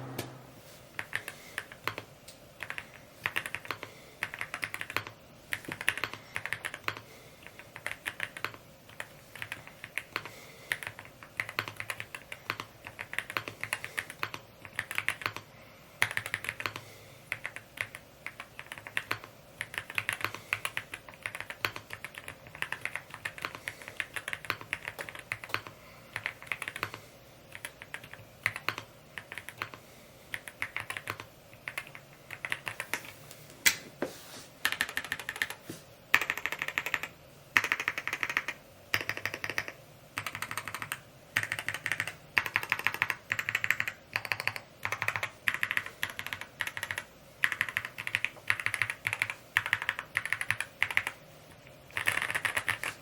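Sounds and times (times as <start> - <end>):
mechanical keyboard typing: 1.0 - 33.2, 34.6 - 51.2, 51.9 - 53.0.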